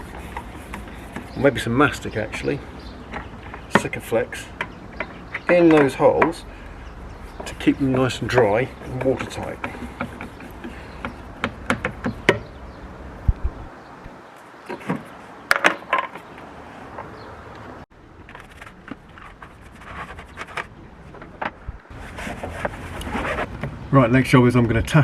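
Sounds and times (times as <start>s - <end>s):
knocks: 7.4s - 12.6s
tool clicks and taps: 8.8s - 12.5s.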